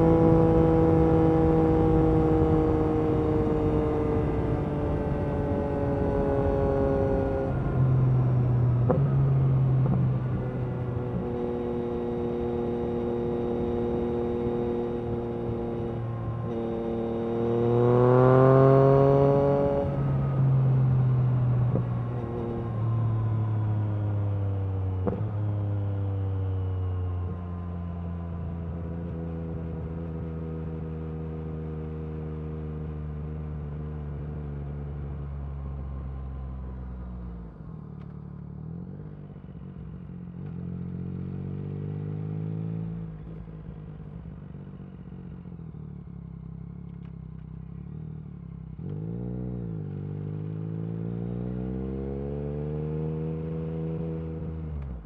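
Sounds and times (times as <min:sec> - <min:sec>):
motorcycle engine revving: 0:00.0 - 0:36.4, 0:37.4 - 0:55.0.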